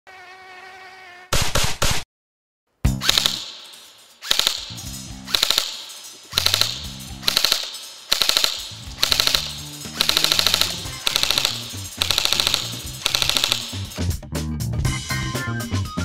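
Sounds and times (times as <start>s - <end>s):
airsoft rifle full-auto bursts: 3.0s - 3.5s, 4.2s - 4.7s, 5.3s - 13.9s.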